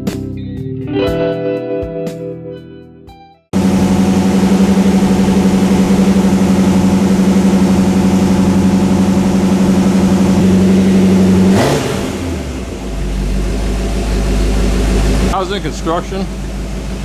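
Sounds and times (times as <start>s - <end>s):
car engine idling: 3.6s - 17.0s.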